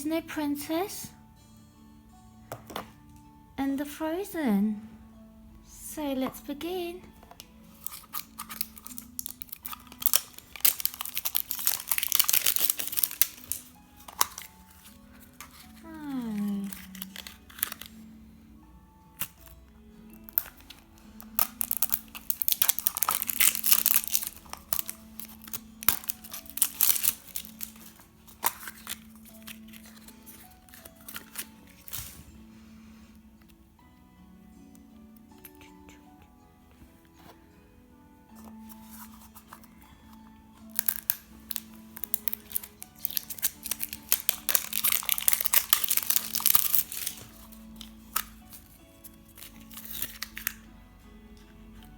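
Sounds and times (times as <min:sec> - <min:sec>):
soft background music: 0:00.0 - 0:51.9
plastic wrapper crinkling and tearing: 0:07.2 - 0:18.1, 0:19.2 - 0:32.4, 0:38.3 - 0:50.7.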